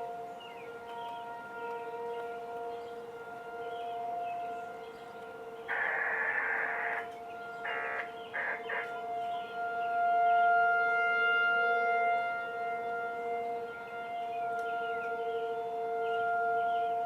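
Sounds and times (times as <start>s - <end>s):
tornado warning siren: 0.0s - 17.0s
loud harsh bursts: 5.7s - 7.0s, 7.6s - 9.0s.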